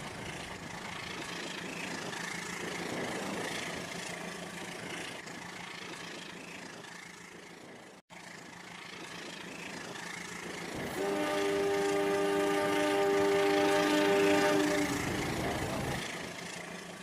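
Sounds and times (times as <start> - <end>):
toy train motor hum: 8.4 - 16.0.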